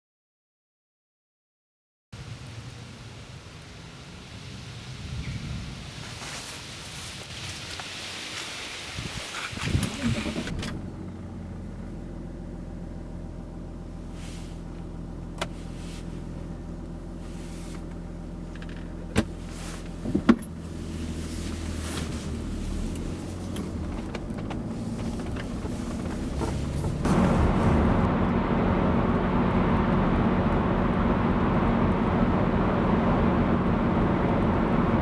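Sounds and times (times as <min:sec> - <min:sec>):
diesel engine idling: 0:09.8 - 0:35.0.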